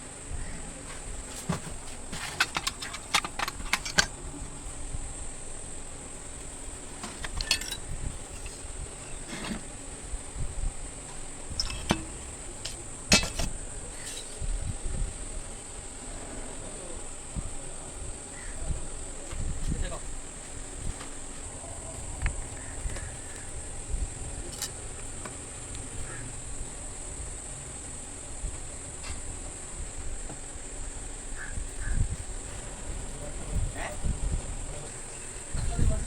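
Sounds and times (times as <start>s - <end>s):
insect chirring: 2.0s - 36.0s
small metal parts clinking: 2.1s - 4.2s, 6.9s - 9.7s, 11.5s - 14.4s, 24.5s - 24.8s.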